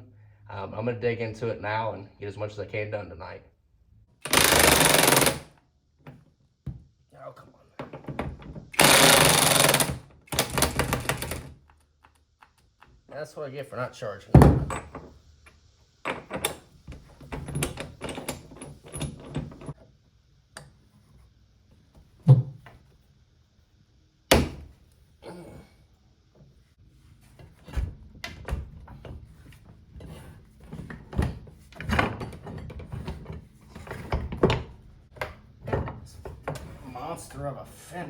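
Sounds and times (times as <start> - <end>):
tools and parts clicking and knocking: 4.2 - 5.5, 7.8 - 13.0, 14.4 - 19.8, 28.2 - 36.7.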